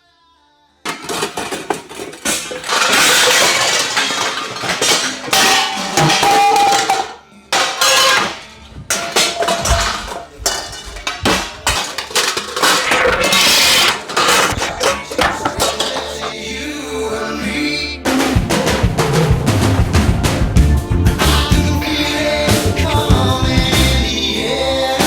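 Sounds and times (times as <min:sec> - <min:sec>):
pots and pans clattering: 0:00.9 - 0:16.4.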